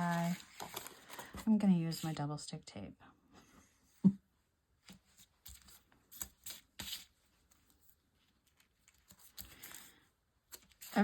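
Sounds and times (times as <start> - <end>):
paper rustling: 0.0 - 2.2, 4.8 - 11.0.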